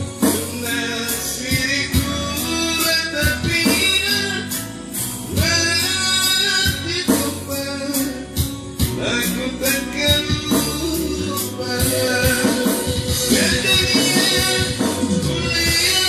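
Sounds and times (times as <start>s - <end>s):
percussion beat: 0.0s - 0.8s, 10.0s - 16.0s
singing: 9.0s - 16.0s.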